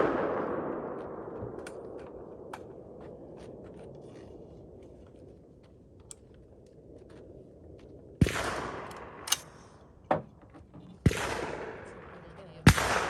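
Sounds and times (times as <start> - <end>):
rifle shot echoing: 0.0 - 3.0, 8.2 - 9.9, 11.0 - 13.0
sharp crack: 8.3 - 9.7.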